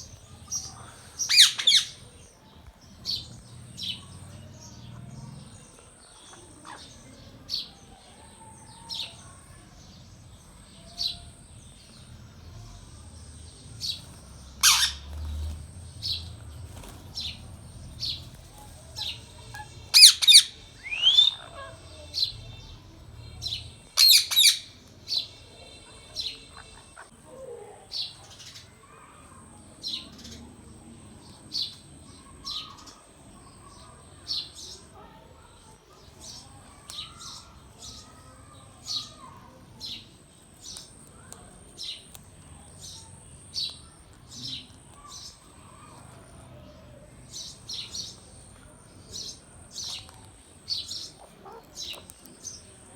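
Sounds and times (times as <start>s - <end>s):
parakeet chirping: 1.3s - 2.1s, 14.6s - 15.2s, 19.0s - 21.8s, 24.0s - 24.7s.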